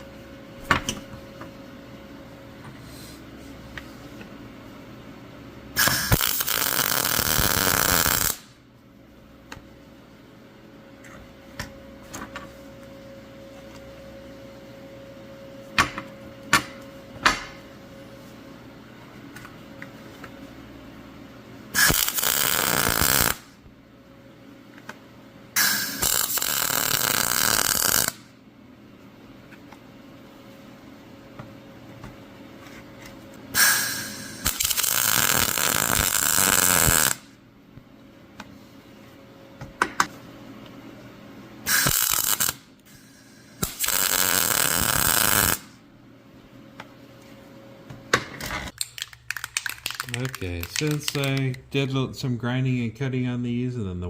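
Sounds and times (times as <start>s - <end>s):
electric arc welding crackle: 5.8s - 8.6s, 21.8s - 23.6s, 25.6s - 28.3s, 33.6s - 37.3s, 41.7s - 42.7s, 43.6s - 45.8s, 49.6s - 51.6s.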